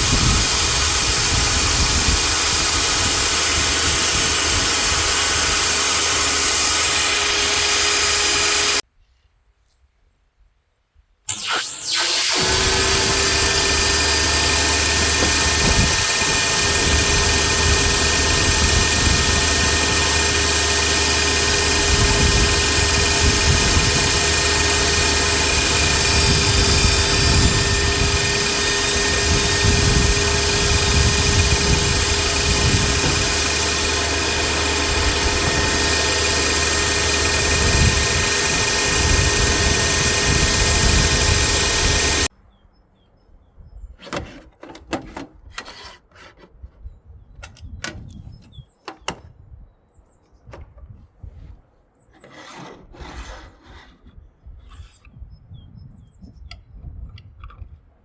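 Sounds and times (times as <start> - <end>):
table saw motor whine: 0.0 - 8.8, 11.3 - 42.3.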